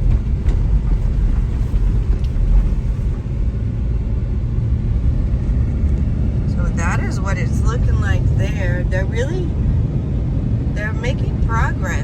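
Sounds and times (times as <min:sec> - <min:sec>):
car driving on bumpy road: 0:00.0 - 0:12.0.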